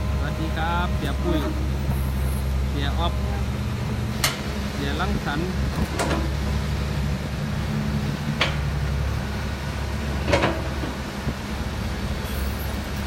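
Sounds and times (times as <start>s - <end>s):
truck engine droning: 0.0s - 13.0s.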